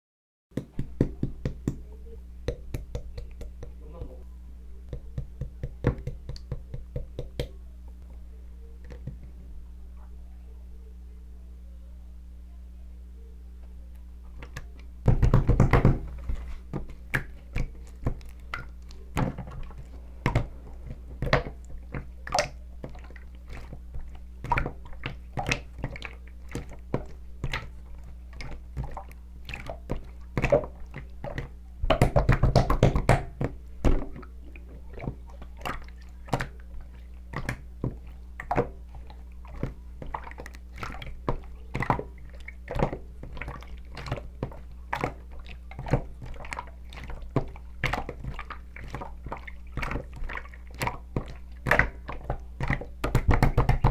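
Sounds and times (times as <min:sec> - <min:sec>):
low electrical hum: 0:00.5 - 0:53.9
close-miked wet eating sounds: 0:16.0 - 0:53.9.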